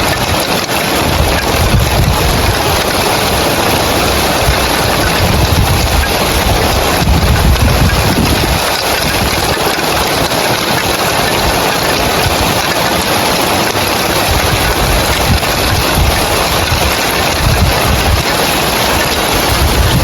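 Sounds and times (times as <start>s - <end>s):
heavy rain on roof tiles: 0.0s - 20.0s
deep rumble: 1.1s - 9.4s.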